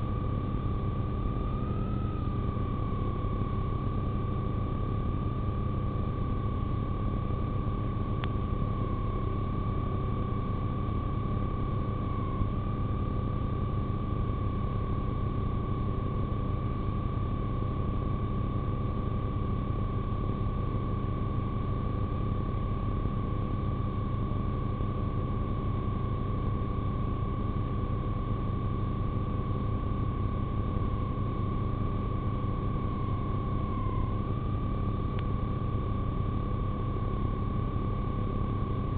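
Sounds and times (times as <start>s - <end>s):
low rumble of police car: 0.0s - 5.4s, 7.9s - 15.2s, 29.7s - 37.8s.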